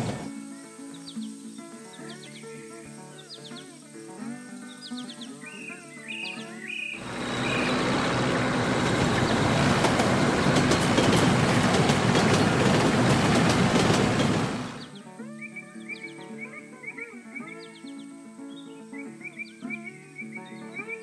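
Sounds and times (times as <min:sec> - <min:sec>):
heavy vehicle passing: 0:00.0 - 0:00.3, 0:07.0 - 0:14.9
background music: 0:00.0 - 0:21.0
rattling clicks: 0:07.0 - 0:14.9.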